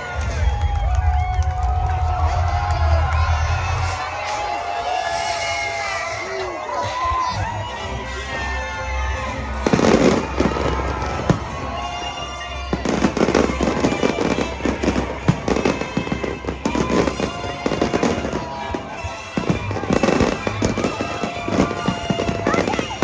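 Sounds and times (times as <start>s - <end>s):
background music: 0.0s - 23.0s
fireworks bursting and crackling: 9.5s - 23.0s.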